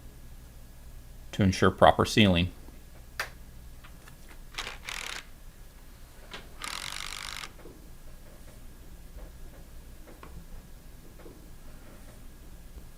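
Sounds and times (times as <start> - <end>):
ratchet wrench clicking: 4.6 - 5.3, 6.6 - 7.6.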